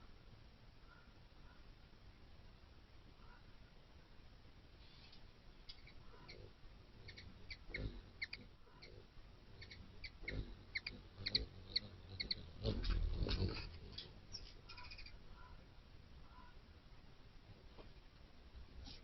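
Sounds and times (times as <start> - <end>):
hummingbird wings whirring: 4.9 - 15.6
hummingbird chip notes: 5.6 - 15.6.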